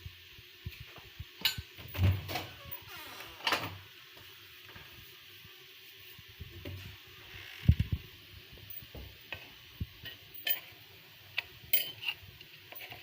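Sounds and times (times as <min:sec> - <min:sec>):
kitchen scrapes: 0:11.7 - 0:13.0.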